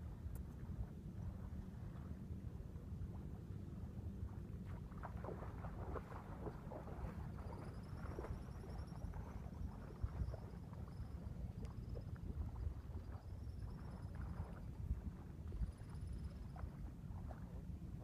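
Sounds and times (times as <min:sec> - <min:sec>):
wind on microphone: 0:00.0 - 0:18.0
splashing water: 0:04.6 - 0:13.2.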